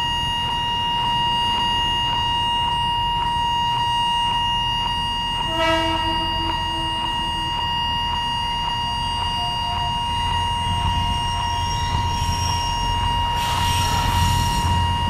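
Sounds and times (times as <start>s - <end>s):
level-crossing warning bell ringing: 0.0s - 15.0s
diesel train rumbling past: 5.5s - 7.5s, 9.4s - 15.0s.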